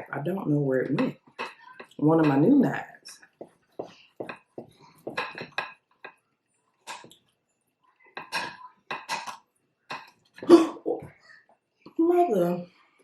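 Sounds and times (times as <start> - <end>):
dishes and cutlery clinking: 0.8 - 6.2, 6.8 - 7.2, 8.0 - 10.7.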